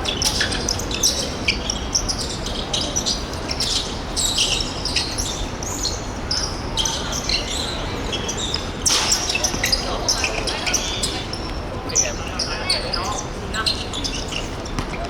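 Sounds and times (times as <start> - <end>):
sports hall rumble: 0.0 - 15.0
sneaker squeaks on court floor: 0.1 - 15.0
ball bouncing: 14.7 - 15.0.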